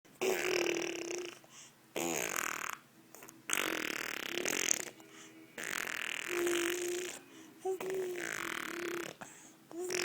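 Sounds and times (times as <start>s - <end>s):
baby blowing raspberries: 0.2s - 1.4s, 3.5s - 10.0s.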